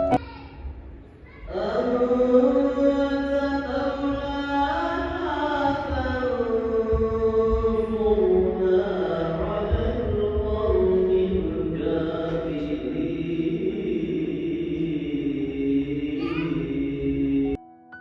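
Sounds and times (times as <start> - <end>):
wordless held vocals: 1.5 - 17.6.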